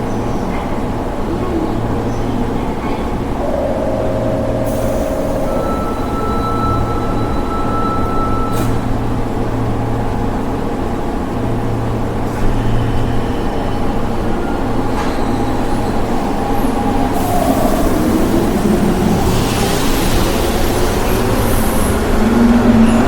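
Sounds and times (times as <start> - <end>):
train rumbling: 0.0 - 23.0
faint whine: 3.3 - 8.7.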